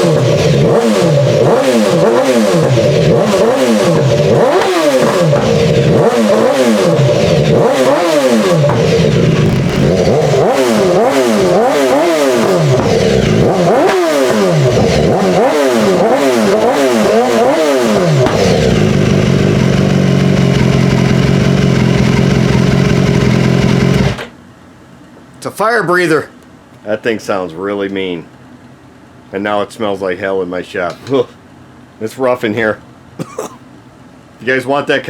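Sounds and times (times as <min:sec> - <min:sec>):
motorcycle engine revving: 0:00.0 - 0:24.3.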